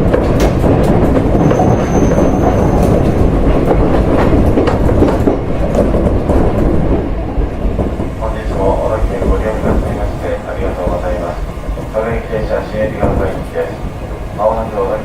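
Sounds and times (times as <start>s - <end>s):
train low rumble: 0.0s - 15.0s
wheels clicking over rail joints: 0.0s - 15.0s
thin high whistle: 1.4s - 2.9s.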